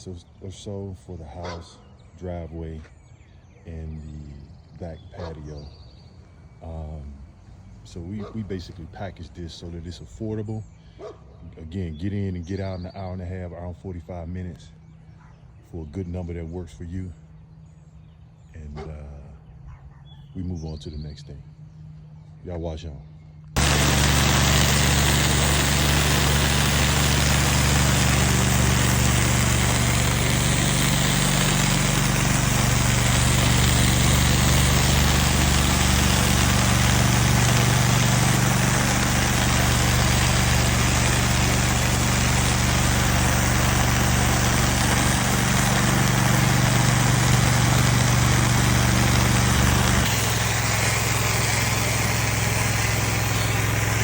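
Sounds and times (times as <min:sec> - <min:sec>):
pressure washer engine drone: 0:23.6 - 0:54.0.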